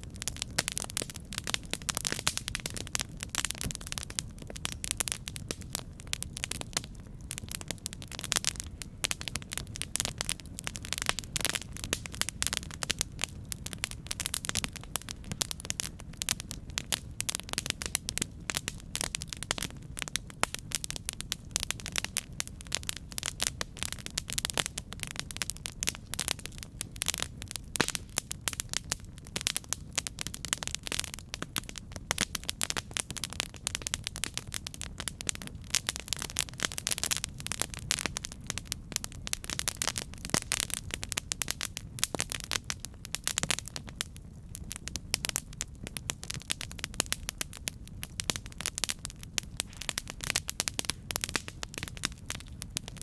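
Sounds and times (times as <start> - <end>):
burning wood crackling and popping: 0.0 - 53.0
low rumble of flames: 0.0 - 53.0.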